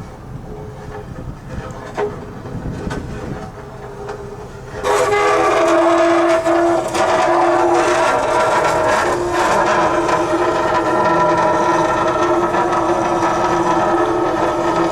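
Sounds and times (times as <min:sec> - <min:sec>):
low rumble of ship: 0:00.0 - 0:14.9
creaks and knocks: 0:04.8 - 0:14.9
loud metallic screech: 0:04.8 - 0:14.9.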